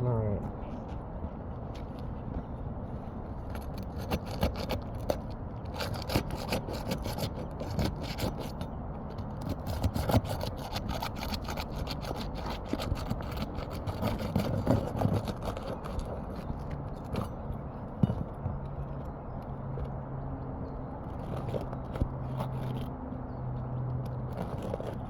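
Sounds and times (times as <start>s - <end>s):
shingles being pried and scraped: 3.4s - 19.1s, 21.0s - 25.0s.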